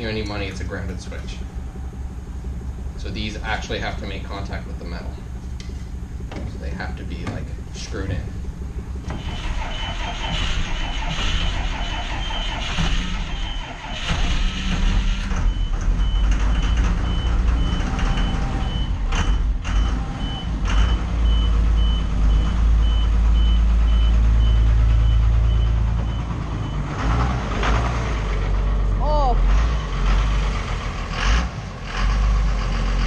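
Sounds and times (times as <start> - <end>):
low engine rumble: 0.0 - 33.0
bus warning beeper: 9.1 - 26.9.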